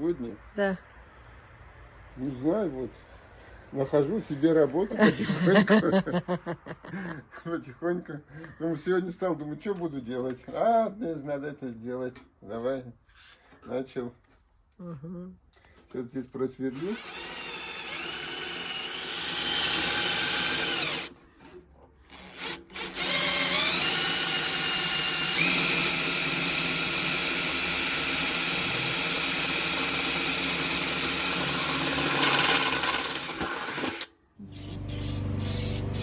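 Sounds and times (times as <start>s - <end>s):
electric drill boring into metal: 16.8s - 21.1s, 22.1s - 34.8s.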